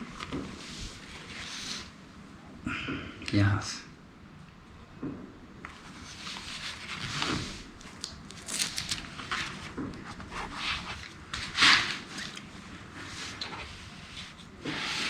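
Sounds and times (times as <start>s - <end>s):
laptop handling rustling and scraping: 5.7s - 15.0s.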